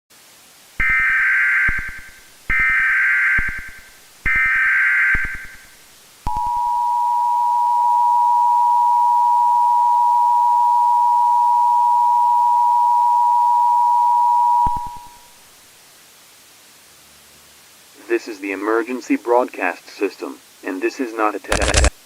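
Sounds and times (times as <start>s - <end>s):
two-tone alert signal: 0.8s - 5.7s, 6.3s - 15.3s.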